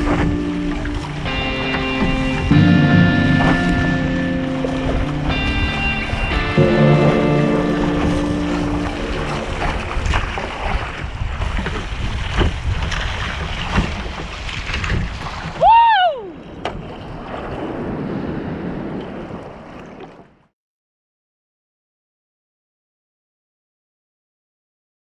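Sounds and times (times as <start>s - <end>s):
wind buffeting microphone: 0.0s - 20.4s
water sloshing around kayak: 0.0s - 20.5s
small knocks and splashes: 8.0s - 15.6s.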